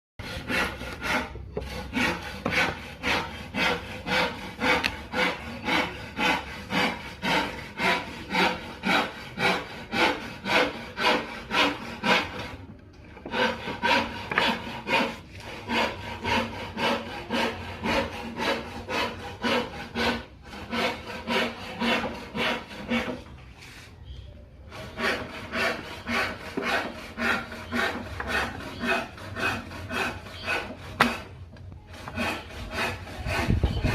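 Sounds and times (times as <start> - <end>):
hand tool scraping wood: 0.2 - 24.0, 24.7 - 33.9.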